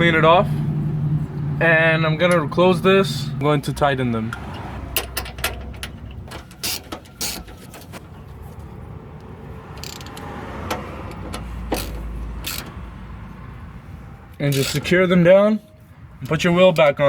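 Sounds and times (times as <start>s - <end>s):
wrench clicks and knocks: 9.7s - 12.7s.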